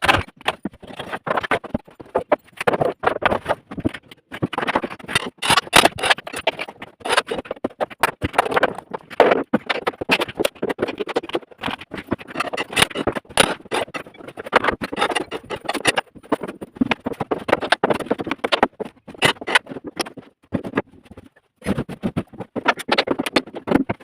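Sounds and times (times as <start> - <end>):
wooden boards knocking and clattering: 0.0 - 24.0.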